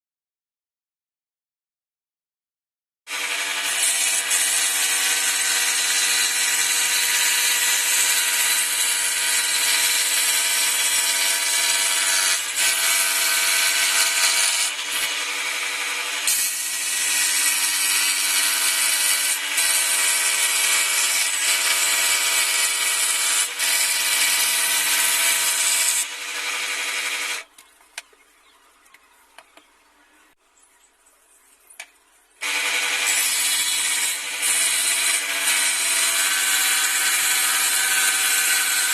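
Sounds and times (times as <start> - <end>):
scroll saw cutting wood: 3.1 - 27.5, 32.4 - 38.9.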